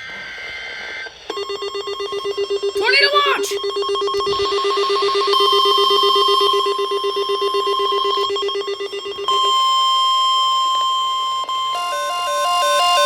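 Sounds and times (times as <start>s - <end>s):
low electronic buzz: 0.0s - 2.8s, 3.5s - 12.1s
steady high alert tone: 1.3s - 10.2s
fast-trilling ringing tone: 1.3s - 10.3s.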